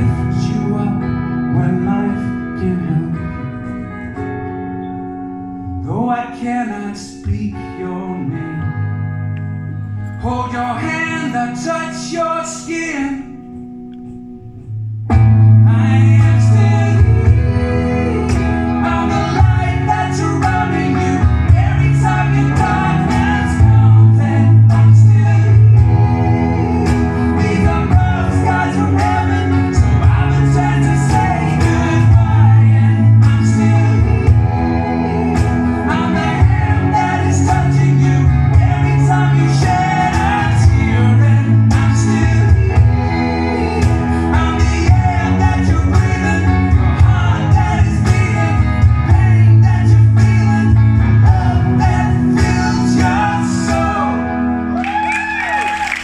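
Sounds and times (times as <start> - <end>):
lead singer singing: 0.0 - 56.0
live band playing: 0.0 - 56.0.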